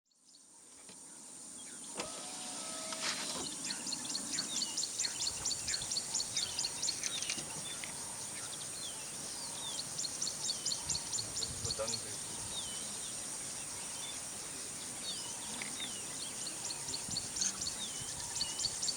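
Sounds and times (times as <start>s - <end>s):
birds chirping: 0.4s - 18.9s
whirring with clicks: 2.0s - 3.6s.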